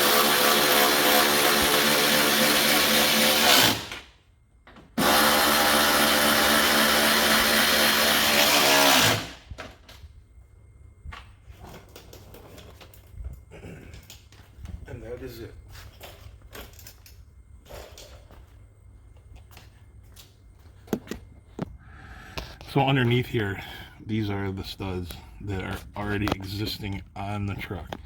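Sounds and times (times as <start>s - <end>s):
cordless power tool running: 0.0s - 4.0s, 5.0s - 9.4s.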